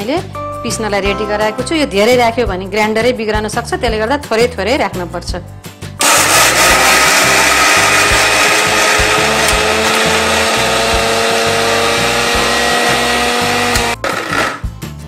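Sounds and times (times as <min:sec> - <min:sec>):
mixer grinder running: 0:06.0 - 0:14.6.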